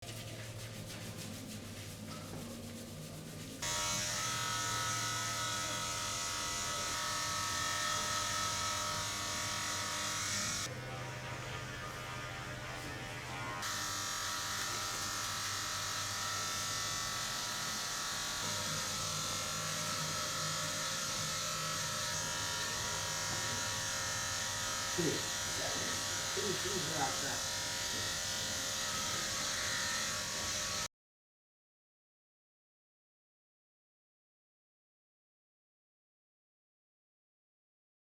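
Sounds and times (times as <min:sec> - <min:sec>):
small electric motor buzzing: 0:03.6 - 0:30.9.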